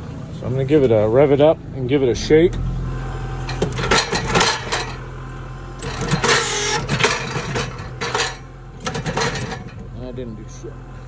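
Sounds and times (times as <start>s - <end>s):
tractor diesel engine running: 0.0s - 11.0s
metal hitch clanking and knocking: 3.4s - 10.3s.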